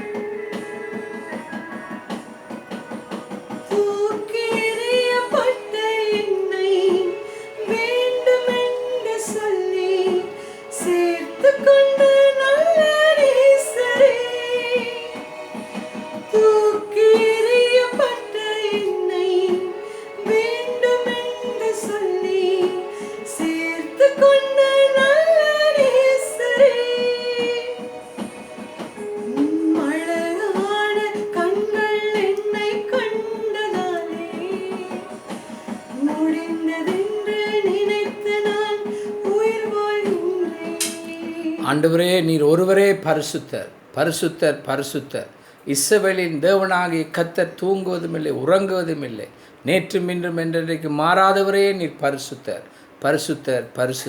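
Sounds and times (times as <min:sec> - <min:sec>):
woman singing: 0:00.0 - 0:41.8
instrumental accompaniment with beat: 0:00.0 - 0:43.9.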